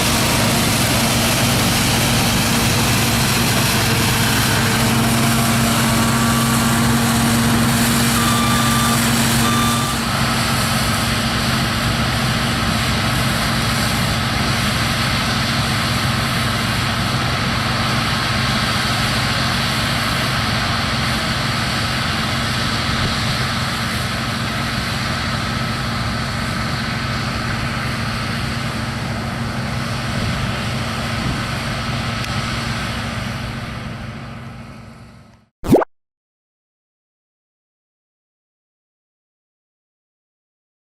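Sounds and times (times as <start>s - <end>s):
steady machine whine: 0.0s - 18.5s
combine harvester droning: 0.0s - 35.3s
short beeps: 5.6s - 6.8s, 8.1s - 10.1s.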